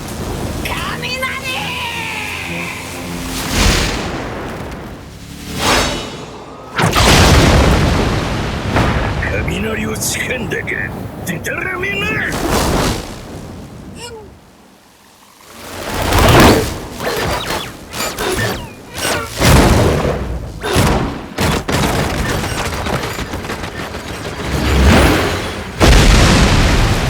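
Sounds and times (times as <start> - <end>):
booms and sharp impacts: 5.6 - 9.6, 16.1 - 27.0.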